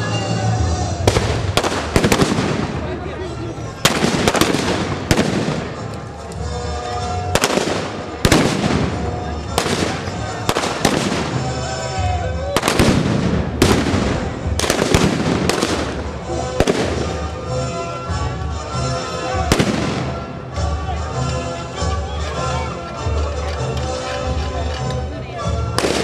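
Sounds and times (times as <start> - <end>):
rifle blank shots echoing: 16.6 - 17.3.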